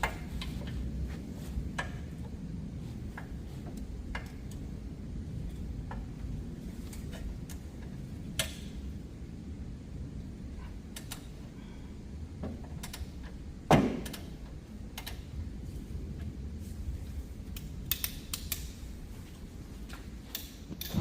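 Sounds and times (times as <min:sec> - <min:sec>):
ratchet clicking: 0:17.5 - 0:18.8.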